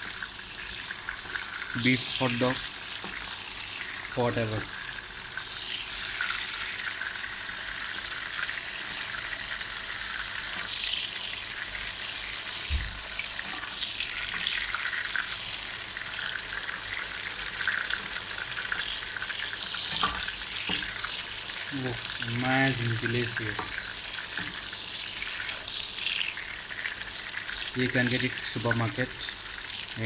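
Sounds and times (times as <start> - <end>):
sausages sizzling in a pan: 0.0 - 30.0
low thump: 12.7 - 13.0.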